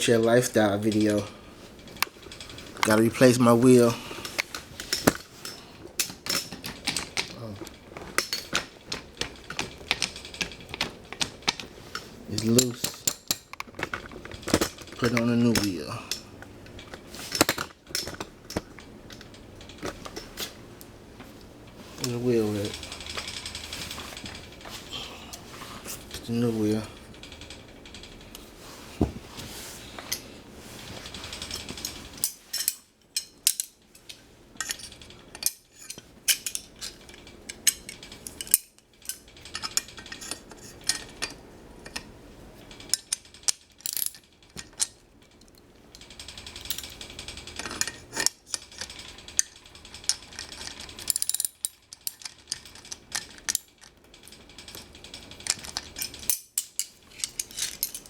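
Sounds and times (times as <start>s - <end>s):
metal clicks and clanks: 1.9s - 20.6s, 31.1s - 58.0s
ratchet clicking: 42.7s - 58.0s.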